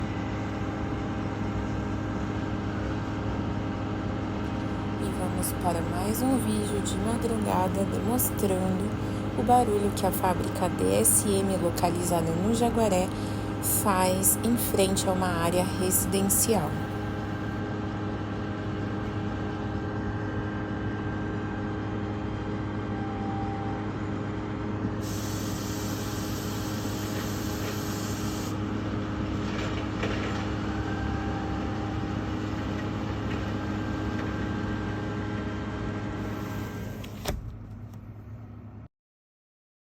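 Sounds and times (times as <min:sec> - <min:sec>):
industrial machinery hum: 0:00.0 - 0:38.9
high hiss: 0:25.0 - 0:28.6.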